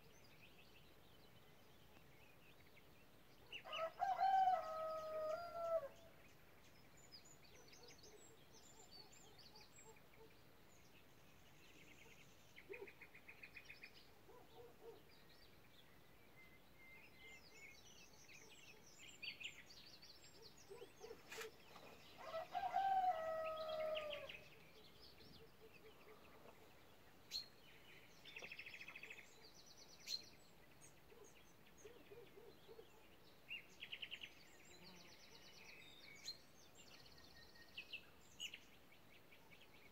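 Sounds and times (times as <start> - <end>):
songbirds chirping and trilling: 0.0 - 39.9
rooster crowing: 3.7 - 5.9, 22.2 - 24.3.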